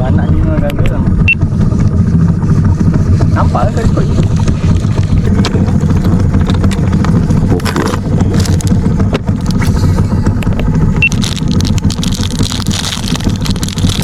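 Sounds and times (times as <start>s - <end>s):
engine running steadily: 0.0s - 14.0s
clicks and rattles: 4.2s - 9.8s.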